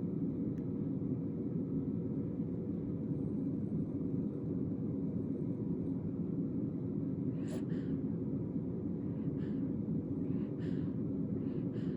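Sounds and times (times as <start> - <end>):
steady low rumble: 0.0 - 11.9.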